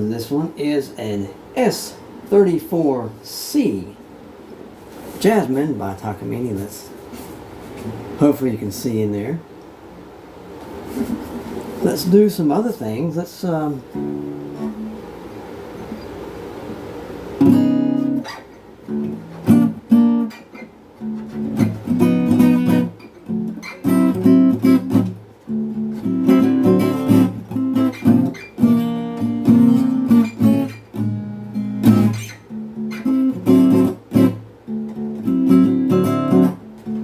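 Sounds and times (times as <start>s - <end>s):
acoustic guitar strumming and picking: 13.7s - 16.1s, 17.3s - 37.0s.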